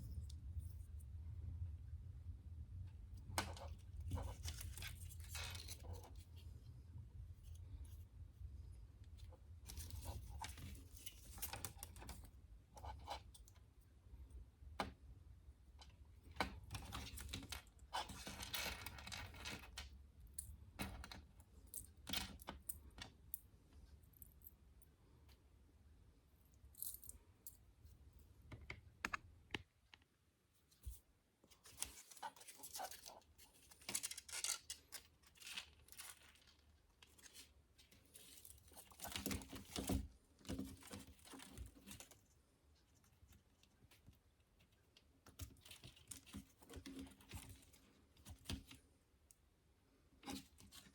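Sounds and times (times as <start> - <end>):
scraping of small parts: 30.7 - 42.2.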